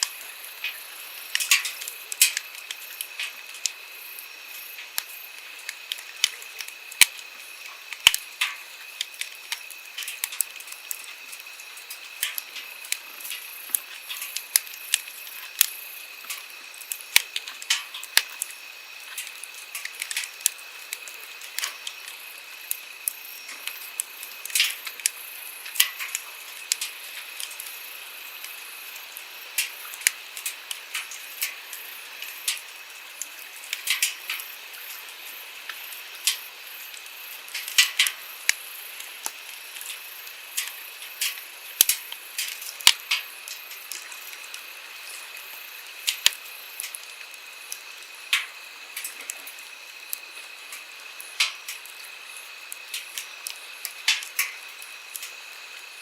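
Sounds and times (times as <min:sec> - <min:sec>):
campfire crackling and popping: 0:00.0 - 0:56.0.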